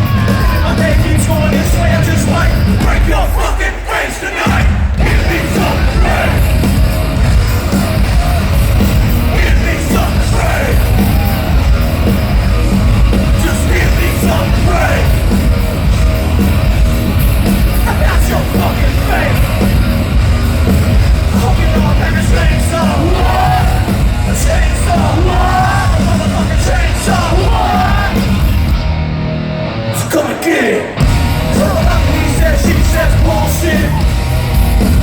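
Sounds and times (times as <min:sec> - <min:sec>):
bass: 0:00.0 - 0:03.6, 0:04.5 - 0:30.3, 0:30.9 - 0:35.0
shouted vocals: 0:00.0 - 0:06.6, 0:07.5 - 0:11.9, 0:13.3 - 0:15.2, 0:17.9 - 0:19.6, 0:21.3 - 0:28.4, 0:30.0 - 0:34.3
distorted guitars: 0:00.0 - 0:35.0
drums: 0:00.0 - 0:35.0.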